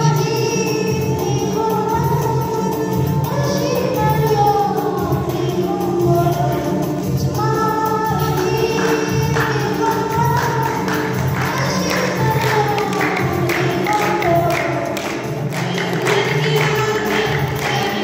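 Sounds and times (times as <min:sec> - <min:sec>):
percussion beat: 0:00.0 - 0:18.0
group of voices singing: 0:07.4 - 0:18.0.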